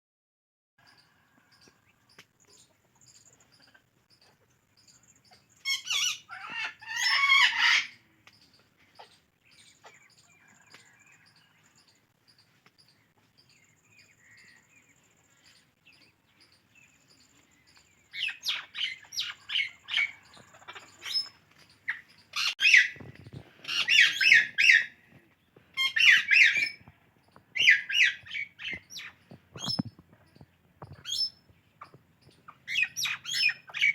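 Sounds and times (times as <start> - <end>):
parakeets squawking loudly: 5.7 - 8.0, 22.3 - 23.0, 23.6 - 25.0, 25.8 - 26.8, 27.6 - 28.8
parakeets chirping: 18.2 - 25.0, 25.8 - 26.9, 27.6 - 30.4.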